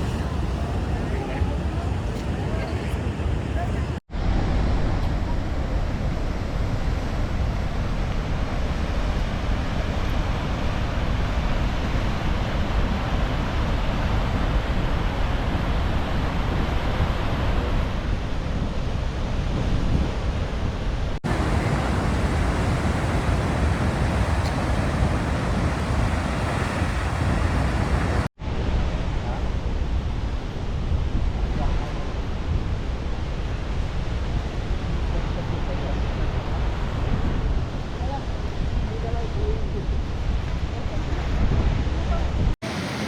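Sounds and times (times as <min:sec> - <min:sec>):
waterfall roaring: 0:00.0 - 0:04.0, 0:21.2 - 0:28.3, 0:42.6 - 0:43.0
wind buffeting microphone: 0:00.0 - 0:18.8, 0:21.2 - 0:28.3.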